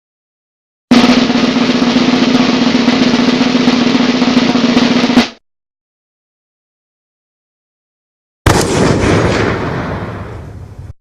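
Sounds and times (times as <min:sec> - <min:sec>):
snare drum roll: 0:00.9 - 0:05.4.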